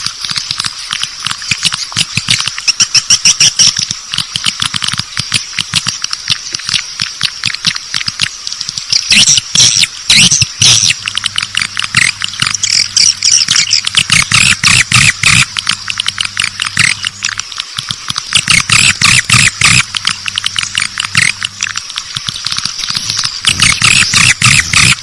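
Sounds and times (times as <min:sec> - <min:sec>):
steady low hum: 0:00.0 - 0:25.0
swiftlets chirping and twittering: 0:00.3 - 0:03.9, 0:08.2 - 0:17.4, 0:18.3 - 0:25.0.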